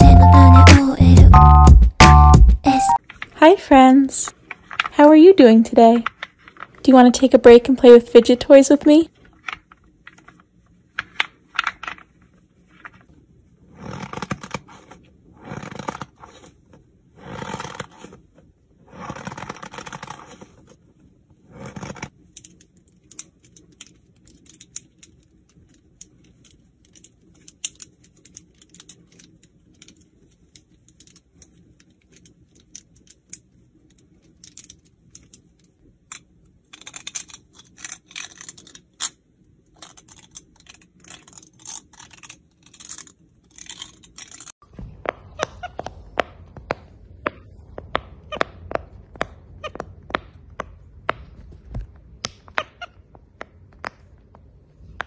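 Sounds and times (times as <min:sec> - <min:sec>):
fidget toys clicking and crackling: 0:21.8 - 0:44.6.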